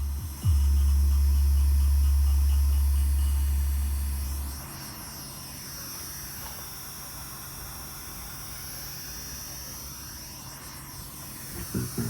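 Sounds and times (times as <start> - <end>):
faint low hum: 0.0 - 4.6.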